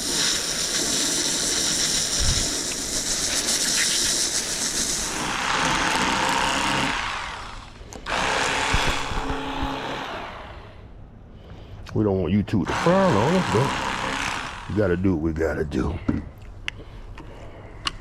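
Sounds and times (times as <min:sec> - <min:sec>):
electric fillet knife cutting fish: 0:00.0 - 0:10.3.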